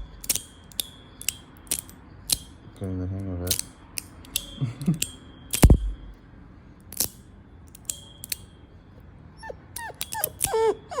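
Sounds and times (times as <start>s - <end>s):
thin high ringing tone: 0.0s - 2.9s, 3.7s - 11.0s
metal fidget slider clicking: 0.2s - 2.6s, 3.5s - 5.8s, 6.9s - 8.5s, 9.8s - 10.6s
dog whimpering and yipping: 9.4s - 11.0s.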